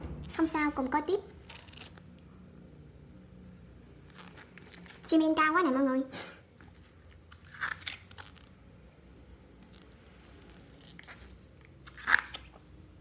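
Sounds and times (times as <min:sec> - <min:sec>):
pages being turned: 0:01.4 - 0:02.1, 0:04.0 - 0:05.2, 0:06.6 - 0:08.6, 0:09.7 - 0:12.7.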